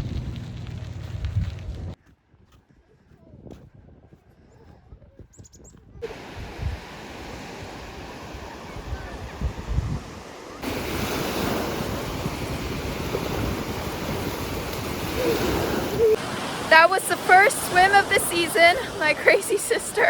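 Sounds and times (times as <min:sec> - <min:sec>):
wind buffeting microphone: 0:00.0 - 0:19.0
waves washing onto beach: 0:06.0 - 0:20.0.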